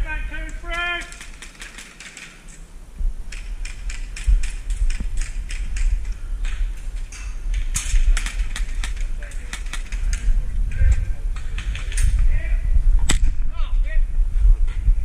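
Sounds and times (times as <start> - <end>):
sharp clicks and knocks: 0.4 - 2.6, 3.3 - 12.2
low rumble: 2.7 - 15.0.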